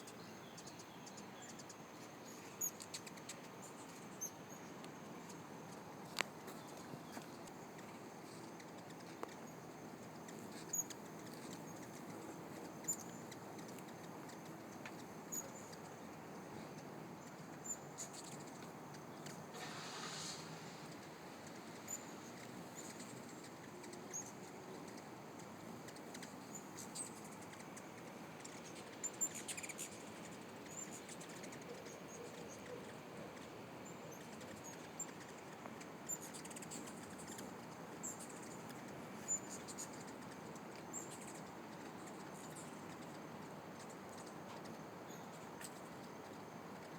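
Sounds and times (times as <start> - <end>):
hummingbirds chirping: 0.0 - 46.9.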